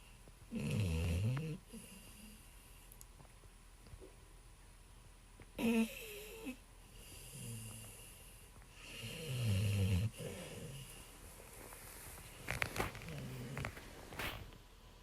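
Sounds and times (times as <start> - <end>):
dog snoring: 0.5 - 2.5, 5.6 - 11.0, 12.4 - 14.4.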